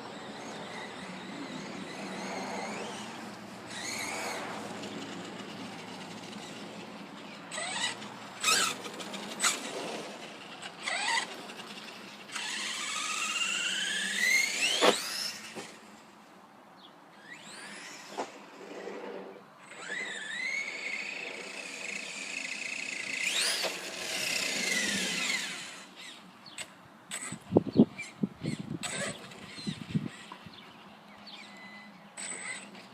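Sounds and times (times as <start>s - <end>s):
electric motor whining: 0.0s - 6.7s, 7.5s - 15.7s, 17.2s - 26.2s.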